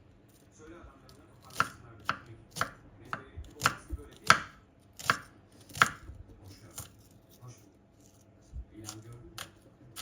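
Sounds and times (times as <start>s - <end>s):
knife chopping on cutting board: 1.4s - 7.0s.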